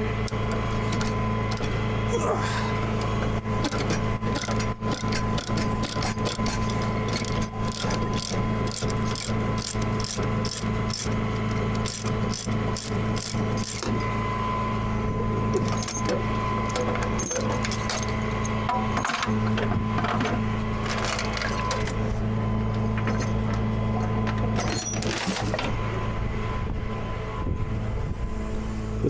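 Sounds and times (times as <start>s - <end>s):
truck engine idling: 0.0s - 13.5s
ratchet pawl clicking: 3.6s - 11.1s, 11.8s - 13.8s.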